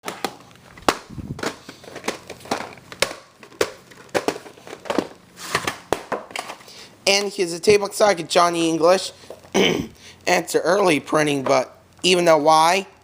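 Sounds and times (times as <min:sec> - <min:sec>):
plastic crinkling: 0:00.0 - 0:06.7.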